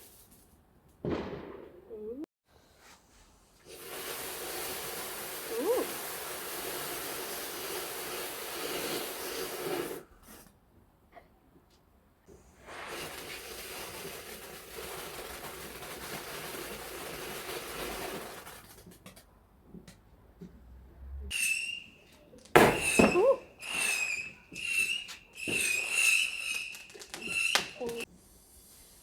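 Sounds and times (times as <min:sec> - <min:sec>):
firework crack: 0:00.0 - 0:02.0, 0:03.7 - 0:10.4, 0:12.4 - 0:19.2, 0:21.3 - 0:28.1
firework hiss: 0:03.6 - 0:10.4, 0:12.3 - 0:18.8, 0:21.3 - 0:29.0
whistling firework bursts: 0:03.7 - 0:10.0, 0:12.4 - 0:18.6, 0:21.3 - 0:29.0.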